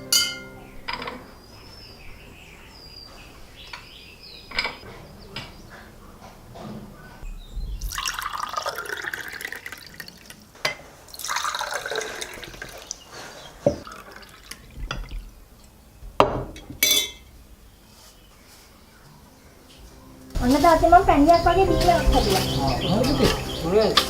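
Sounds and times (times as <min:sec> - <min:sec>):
glass clinks: 0:00.0 - 0:01.2, 0:16.8 - 0:17.2
liquid pouring into glass: 0:07.8 - 0:10.3, 0:11.1 - 0:13.0, 0:13.8 - 0:15.2.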